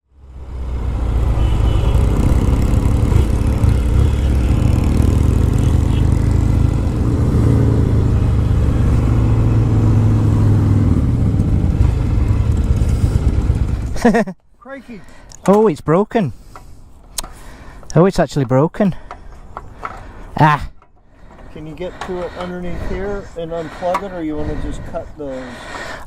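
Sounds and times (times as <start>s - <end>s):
motorcycle engine running loudly: 1.1s - 14.0s.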